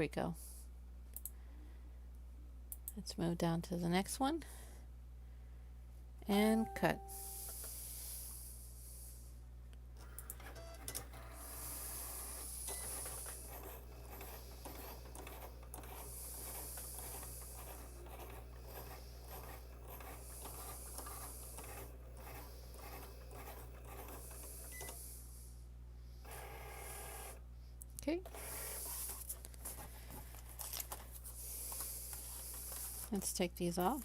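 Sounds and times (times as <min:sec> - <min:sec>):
cutting machine motors whirring: 0:10.1 - 0:25.0, 0:26.3 - 0:27.4, 0:28.2 - 0:29.8.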